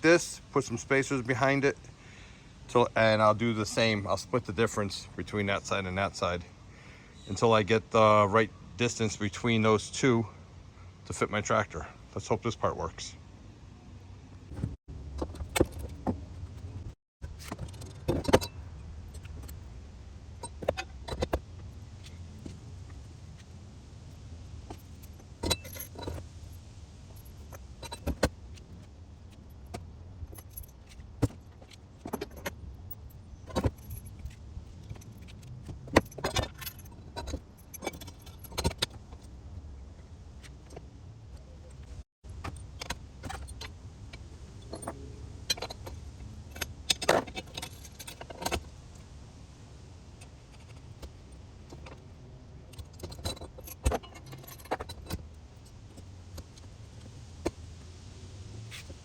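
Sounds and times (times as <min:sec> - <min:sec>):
metal bolts and washers clinking: 0:14.5 - 0:19.7, 0:20.3 - 0:39.4, 0:40.4 - 0:57.6.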